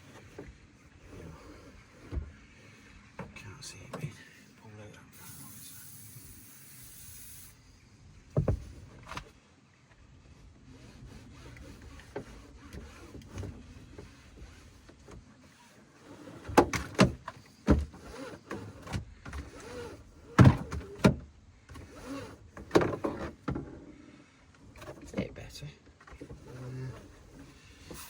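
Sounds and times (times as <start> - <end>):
seatbelt webbing sliding: 15.5 - 21.1, 21.8 - 22.4.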